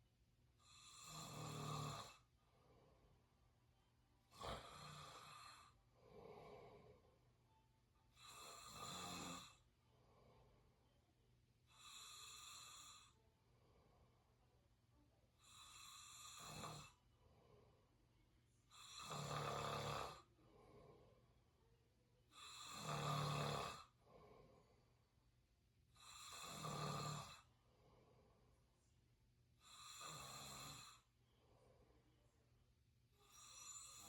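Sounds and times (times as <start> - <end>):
person snoring: 0.6 - 2.2, 4.3 - 6.8, 8.2 - 9.6, 11.7 - 13.2, 15.4 - 17.0, 18.7 - 20.3, 22.3 - 24.0, 26.0 - 27.5, 29.6 - 31.1, 33.2 - 34.0.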